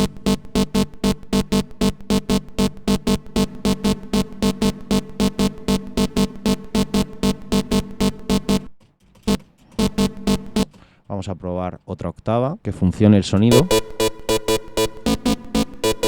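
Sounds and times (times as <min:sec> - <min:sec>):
distorted saw synth notes: 0:00.0 - 0:08.7, 0:09.3 - 0:10.7, 0:13.5 - 0:16.0.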